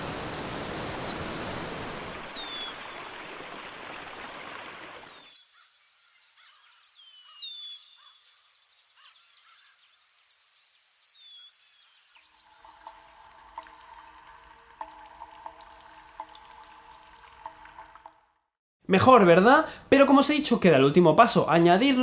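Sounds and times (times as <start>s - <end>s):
insect chirping: 0.0s - 14.7s
birds whistling calls: 0.5s - 13.8s.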